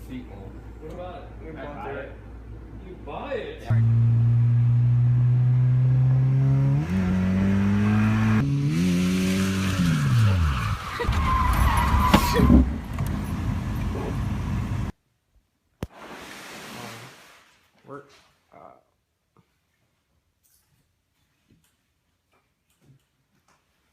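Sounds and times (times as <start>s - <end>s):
car engine revving: 3.7s - 10.8s
tyre squeal: 9.8s - 12.7s.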